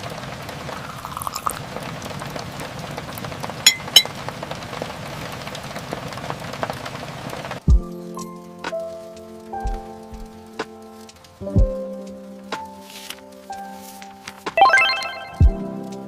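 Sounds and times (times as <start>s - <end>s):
steady rain: 0.0s - 16.0s
bright ringing clinks: 3.7s - 4.1s.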